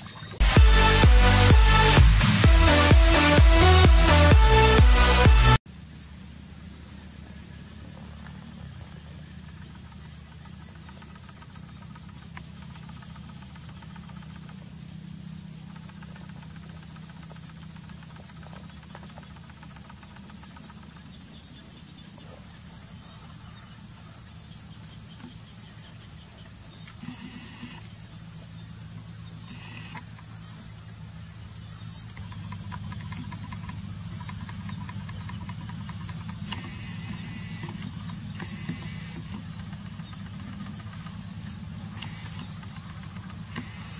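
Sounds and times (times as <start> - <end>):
low motor hum: 0.0 - 43.9
high-pitched insect drone: 27.0 - 43.9.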